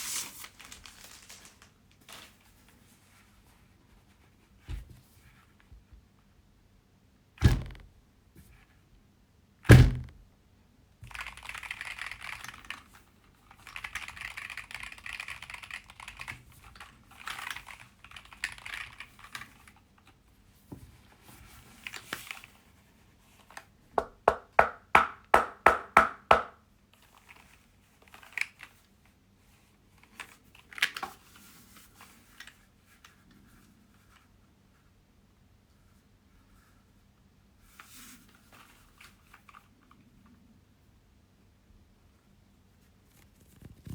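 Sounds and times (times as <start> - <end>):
rustling and sliding: 0.0 - 5.7, 29.4 - 34.9, 37.6 - 39.6
heavy thunks: 7.4 - 7.9, 9.7 - 10.2.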